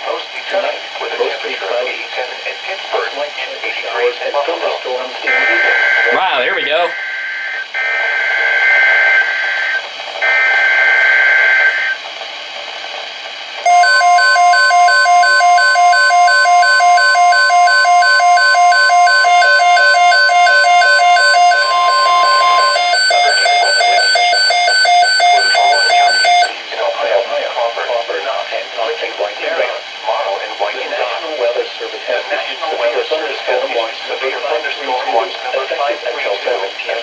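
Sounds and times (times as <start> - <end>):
harsh two-tone data bursts: 5.3 - 12.0, 13.7 - 26.5
rapidly pulsing electronic beeping: 13.7 - 26.5
steady alert tone: 13.7 - 26.5.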